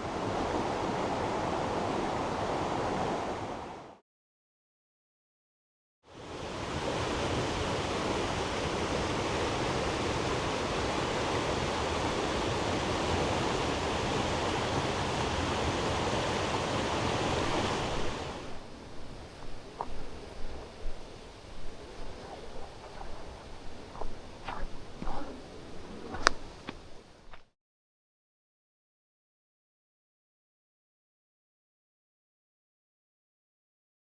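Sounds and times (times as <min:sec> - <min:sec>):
stream water rushing: 0:00.0 - 0:04.0, 0:06.1 - 0:27.4.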